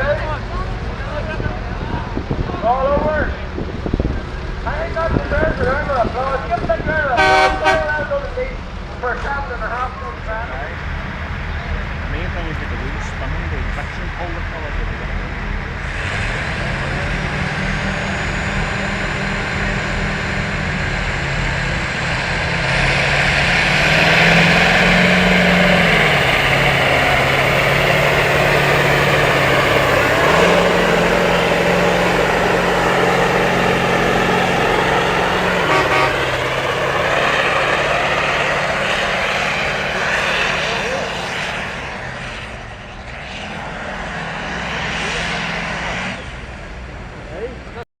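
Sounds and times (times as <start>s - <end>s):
tractor engine working under load: 10.3s - 41.7s.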